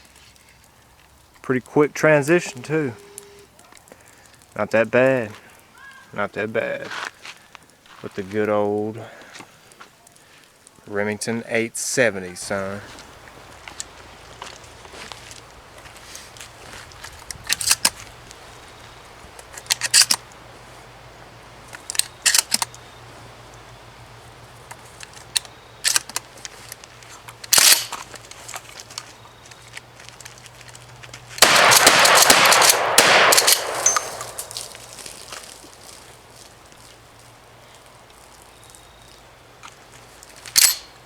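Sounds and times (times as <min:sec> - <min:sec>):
sharp cracks and clacks: 0:19.4 - 0:20.4, 0:21.7 - 0:22.8, 0:24.7 - 0:36.1
shotgun firing: 0:31.4 - 0:34.9.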